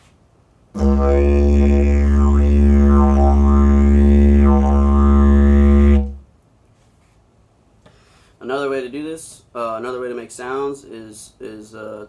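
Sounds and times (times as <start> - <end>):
didgeridoo drone: 0.8 - 6.2.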